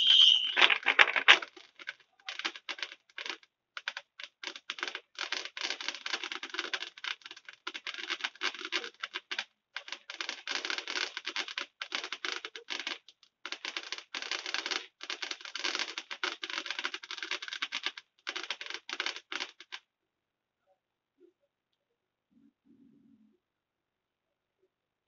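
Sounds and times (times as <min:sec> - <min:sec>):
fireworks crackling: 0:00.0 - 0:03.4, 0:04.3 - 0:19.8.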